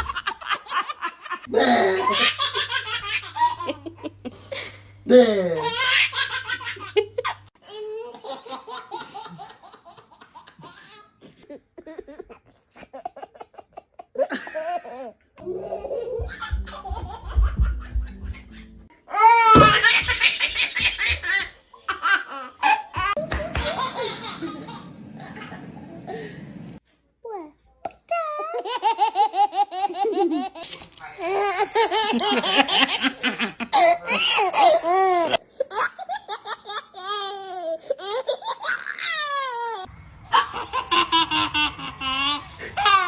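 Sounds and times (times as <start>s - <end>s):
baby laughing: 5.1s - 11.2s, 11.8s - 25.5s, 28.6s - 43.0s.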